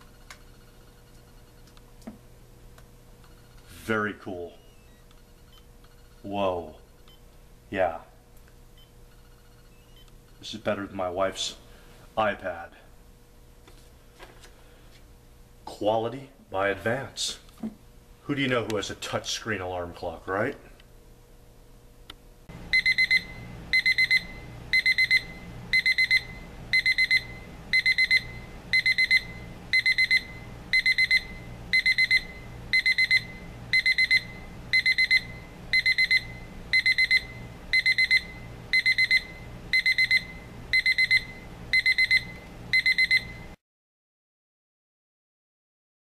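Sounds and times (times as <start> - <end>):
high-pitched alarm clock beeping: 22.7 - 43.5.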